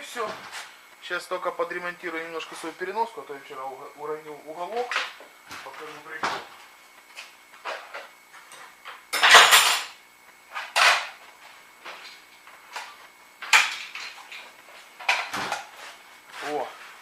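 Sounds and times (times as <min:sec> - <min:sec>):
objects clattering on workbench: 0:04.8 - 0:11.2, 0:11.8 - 0:16.6.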